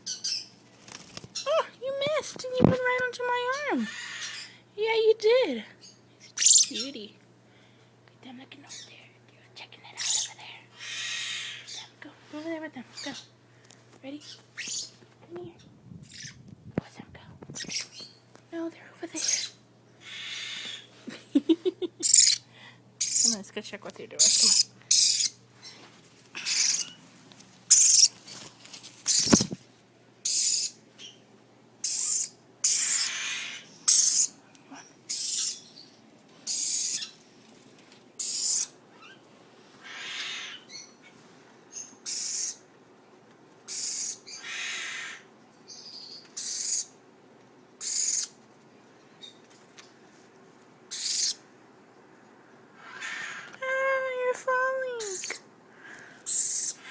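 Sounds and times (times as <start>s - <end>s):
lorikeets screeching: 3.7s - 4.6s, 5.9s - 6.9s, 10.0s - 11.9s, 19.2s - 20.9s, 22.1s - 22.4s, 23.0s - 23.4s, 24.2s - 25.8s, 26.4s - 27.0s, 27.7s - 28.1s, 30.2s - 31.2s, 31.8s - 34.4s, 35.1s - 35.9s, 36.5s - 37.2s, 38.2s - 39.2s, 39.8s - 41.0s, 41.8s - 42.6s, 43.7s - 47.0s, 47.8s - 48.4s, 50.9s - 51.4s, 52.8s - 53.6s, 56.3s - 56.9s.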